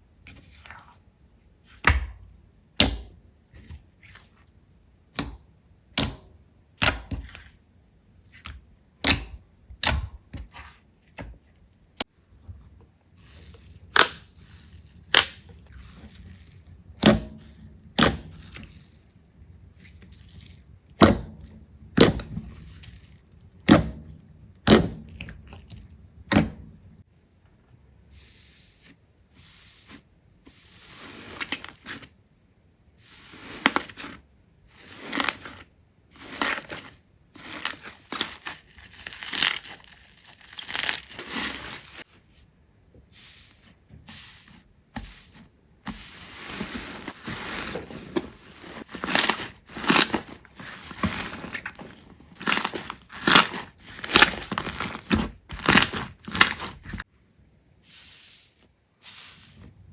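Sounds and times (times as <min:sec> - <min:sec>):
slime squishing with crackle: 0:37.5 - 0:42.0.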